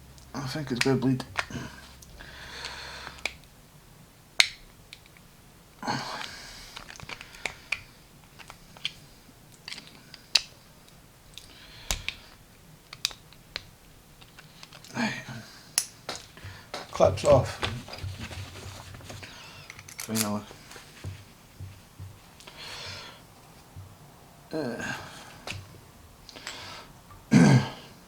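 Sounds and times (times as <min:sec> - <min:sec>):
screwdriver clicking and scraping metal: 0:19.6 - 0:20.4.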